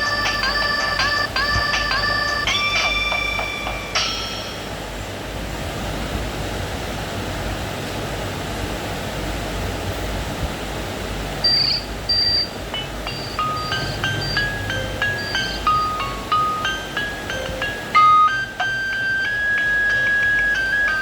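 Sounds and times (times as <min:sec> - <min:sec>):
high electronic beeps: 0:00.0 - 0:03.9, 0:11.4 - 0:21.0
electronic ringtone: 0:00.0 - 0:04.7, 0:11.4 - 0:21.0
steady hiss with low hum: 0:00.0 - 0:21.0.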